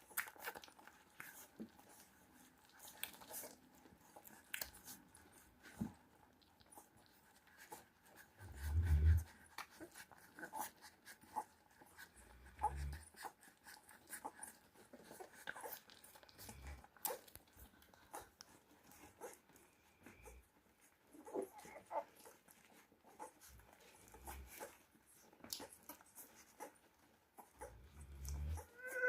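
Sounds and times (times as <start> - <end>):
puppies squeaking: 12.6 - 29.0.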